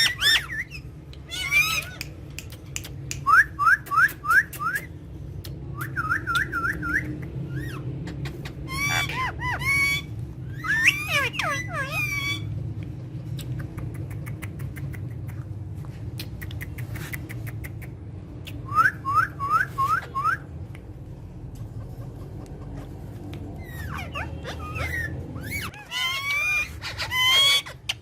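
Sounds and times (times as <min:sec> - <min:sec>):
parrots squawking: 0:00.0 - 0:02.3, 0:07.4 - 0:12.6, 0:21.6 - 0:28.0
steady low hum: 0:00.0 - 0:28.0.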